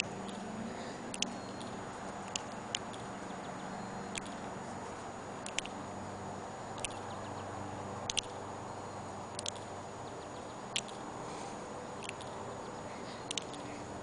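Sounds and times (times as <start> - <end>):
sharp high ticks: 0.0 - 0.5, 1.1 - 4.5, 5.4 - 5.8, 6.7 - 7.4, 8.0 - 8.5, 9.2 - 11.1, 11.9 - 13.9
low background hum: 0.0 - 14.0.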